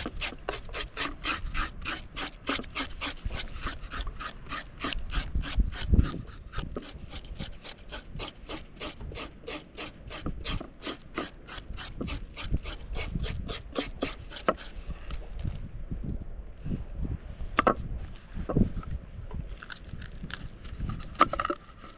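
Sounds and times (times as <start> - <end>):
knife scraping fish: 0.0 - 15.2.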